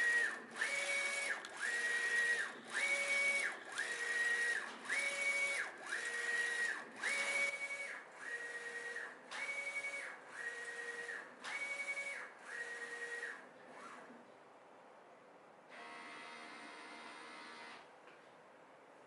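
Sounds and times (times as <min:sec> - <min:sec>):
printer carriage motor whine: 0:00.0 - 0:13.9.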